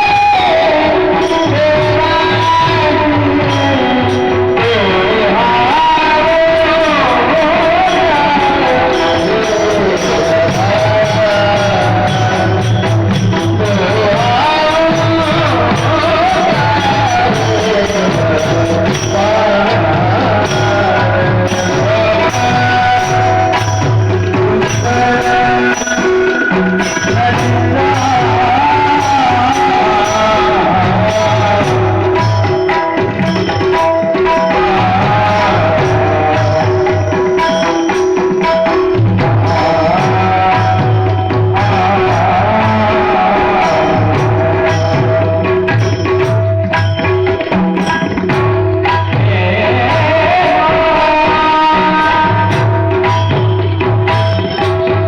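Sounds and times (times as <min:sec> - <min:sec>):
person singing lead: 0:00.0 - 0:46.3, 0:49.0 - 0:53.9
hand cymbals struck: 0:00.0 - 0:55.0
drum low beat: 0:06.9 - 0:50.8.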